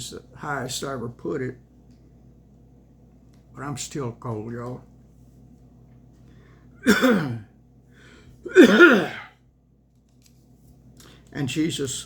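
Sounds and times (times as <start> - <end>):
man coughing: 6.8 - 7.5, 8.5 - 9.3.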